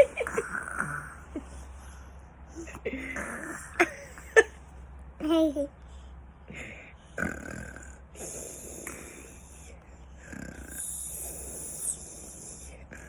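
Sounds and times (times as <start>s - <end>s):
person snoring: 0.2s - 1.2s, 2.9s - 3.8s, 6.5s - 13.0s.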